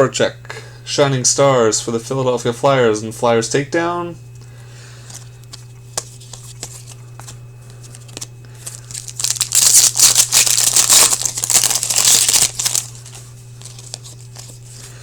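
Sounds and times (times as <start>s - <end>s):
low electrical hum: 0.0s - 15.0s
foil wrapper ripping and crinkling: 7.8s - 15.0s.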